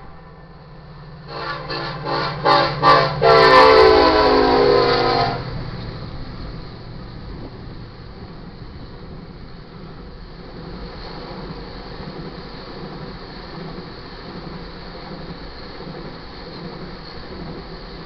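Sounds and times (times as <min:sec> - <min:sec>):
train low rumble: 0:00.0 - 0:18.0
locomotive air horn toots: 0:01.2 - 0:05.6.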